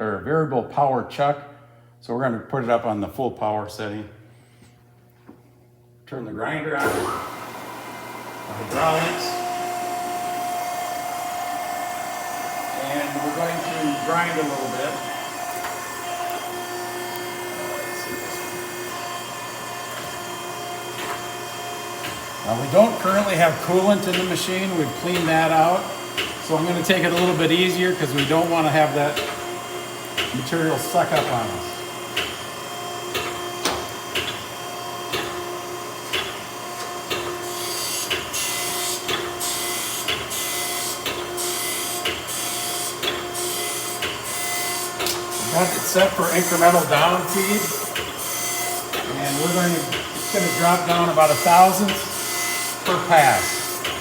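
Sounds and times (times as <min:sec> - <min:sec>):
surface grinder whining over a hum: 0:06.8 - 0:30.8.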